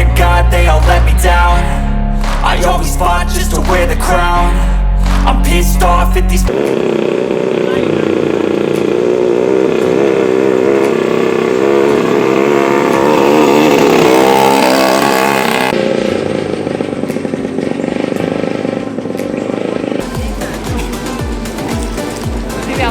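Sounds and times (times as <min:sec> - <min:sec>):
boat engine running loud: 0:05.8 - 0:22.9.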